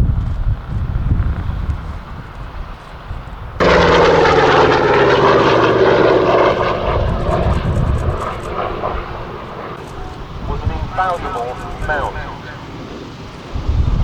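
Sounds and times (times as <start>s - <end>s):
propeller plane engine passing: 3.6s - 14.0s.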